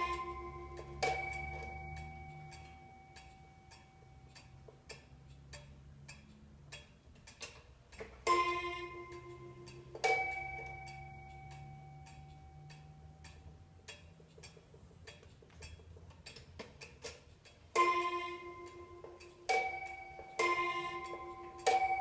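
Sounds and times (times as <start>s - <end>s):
wall clock striking: 0.0s - 6.0s, 8.1s - 15.0s, 17.7s - 22.0s
pendulum ticking: 0.0s - 22.0s.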